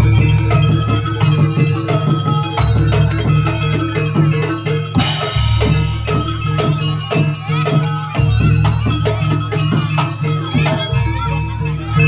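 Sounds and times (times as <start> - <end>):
bright cymbal crash: 0.0 - 7.4
drums: 0.0 - 12.0
metal-keyed percussion melody: 0.0 - 12.0.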